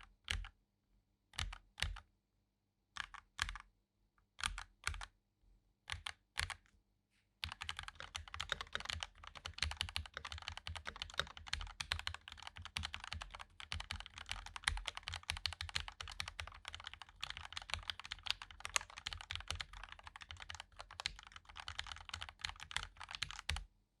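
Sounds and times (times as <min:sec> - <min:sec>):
typing on mechanical keyboard: 0:03.0 - 0:03.7, 0:04.4 - 0:05.1, 0:05.9 - 0:06.6, 0:07.4 - 0:23.6.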